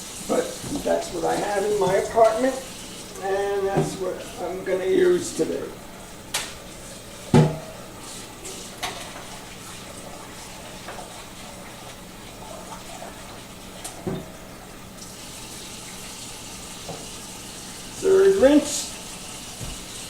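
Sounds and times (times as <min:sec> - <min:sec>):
tap water running into pot: 0:00.0 - 0:20.0
pot knocking: 0:07.3 - 0:07.8.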